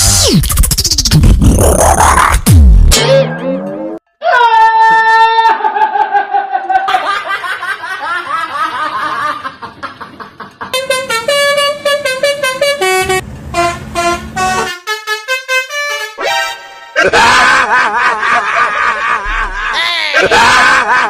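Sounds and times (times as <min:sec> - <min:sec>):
multi-tone bus horn tune: 0:10.7 - 0:17.0.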